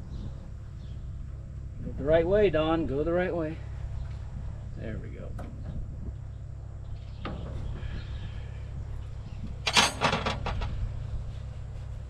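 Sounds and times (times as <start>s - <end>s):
metal hand tools clattering: 9.7s - 10.4s
rattling clicks: 9.7s - 10.4s.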